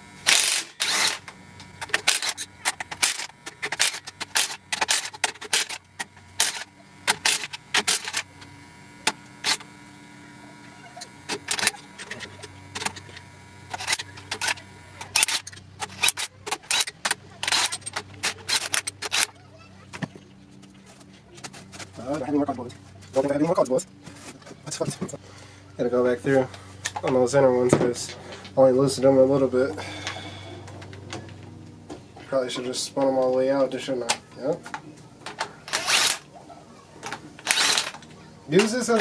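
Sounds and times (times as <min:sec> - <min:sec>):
socket ratchet clicking: 0:11.3 - 0:19.4, 0:37.4 - 0:38.0.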